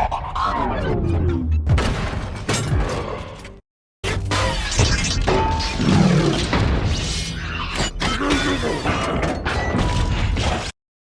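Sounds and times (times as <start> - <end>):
robot growl: 5.8 - 6.5.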